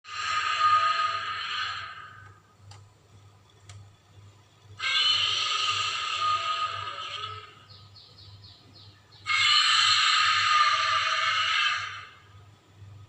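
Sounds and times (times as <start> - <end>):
monster screeching roar: 0.1 - 2.2, 4.8 - 7.6, 9.3 - 12.2
low electrical hum: 0.1 - 13.0.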